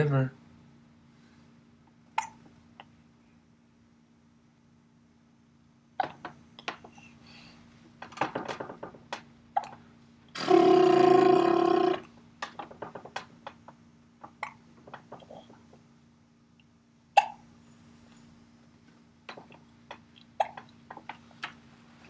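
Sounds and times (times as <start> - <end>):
baby hiccuping: 2.2 - 2.4, 17.2 - 17.4
steady-pitched baby vocal sound: 2.2 - 2.9, 10.4 - 12.1, 14.4 - 15.7.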